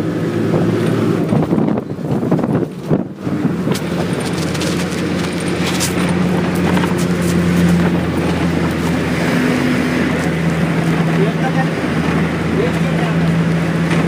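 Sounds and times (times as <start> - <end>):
bus engine running: 0.0 - 14.0
road noise: 0.0 - 14.0
light rattles: 0.9 - 9.0.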